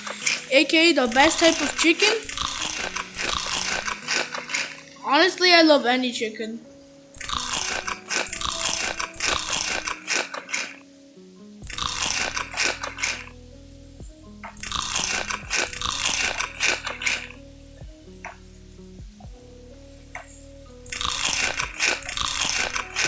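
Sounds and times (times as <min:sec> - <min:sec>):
background music: 0:00.0 - 0:23.0
crunchy chewing: 0:01.5 - 0:05.0, 0:07.2 - 0:10.8, 0:11.6 - 0:13.3, 0:14.5 - 0:17.4, 0:20.2 - 0:23.0.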